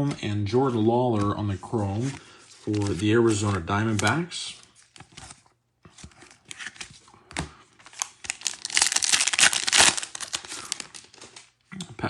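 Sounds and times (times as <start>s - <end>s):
cards clicking: 2.0s - 4.2s
foil wrapper crinkling and tearing: 7.8s - 11.5s.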